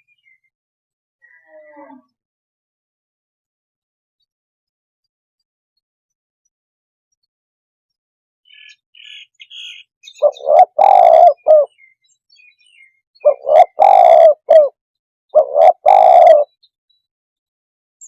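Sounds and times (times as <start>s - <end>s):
dove cooing: 10.2s - 11.7s, 13.2s - 14.8s, 15.4s - 16.5s.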